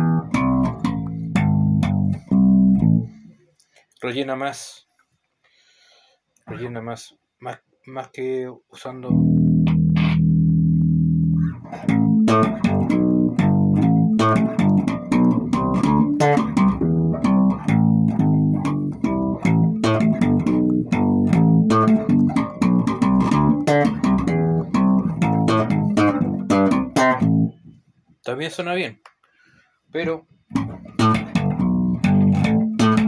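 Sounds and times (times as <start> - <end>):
electric bass guitar plucked: 0.0 - 3.3, 9.1 - 27.8, 30.5 - 33.0.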